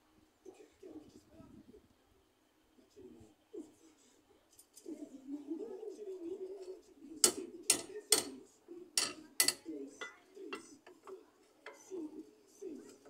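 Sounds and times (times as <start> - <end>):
crowbar clanking on metal: 7.2 - 8.4, 9.0 - 10.8
light metal taps: 7.2 - 8.4, 9.0 - 11.9.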